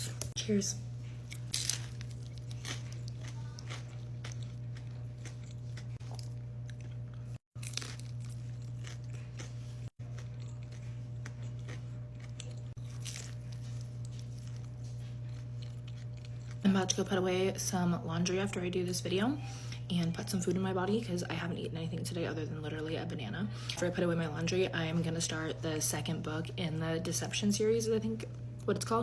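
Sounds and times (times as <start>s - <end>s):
steady low hum: 0.0s - 29.0s
crunchy chewing: 1.2s - 16.6s.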